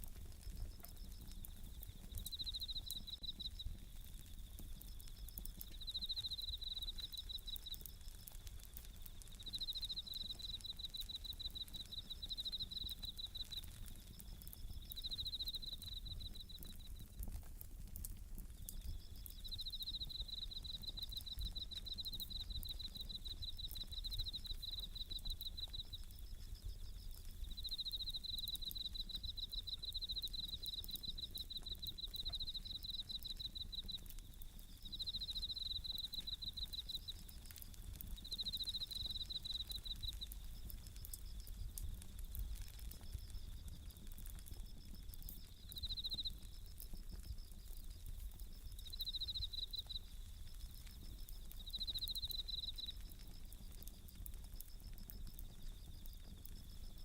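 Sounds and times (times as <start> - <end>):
campfire crackling: 0.0 - 57.0
crickets trilling: 0.0 - 57.0.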